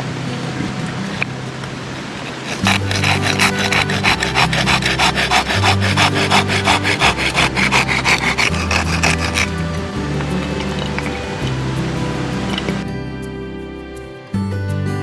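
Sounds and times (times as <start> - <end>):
low background music: 0.0 - 15.0
hand saw cutting wood: 2.2 - 12.8.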